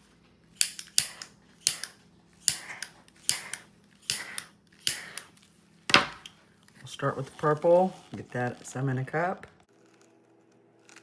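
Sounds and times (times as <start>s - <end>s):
torch click and hiss: 0.6s - 5.4s.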